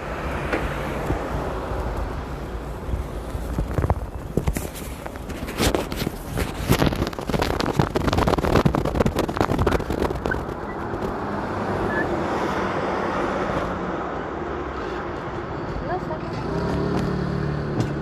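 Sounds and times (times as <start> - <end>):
low traffic hum: 0.0 - 18.0.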